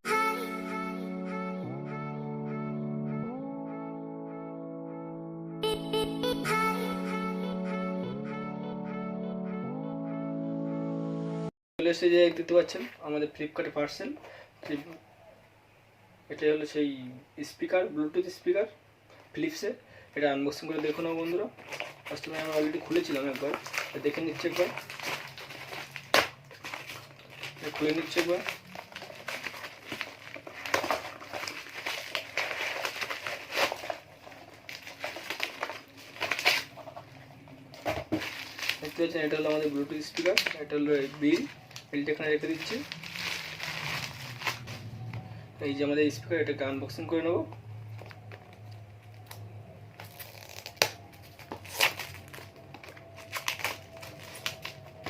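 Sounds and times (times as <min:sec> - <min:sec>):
packaging crinkling and rustling: 0:20.4 - 0:45.4, 0:47.4 - 0:55.0.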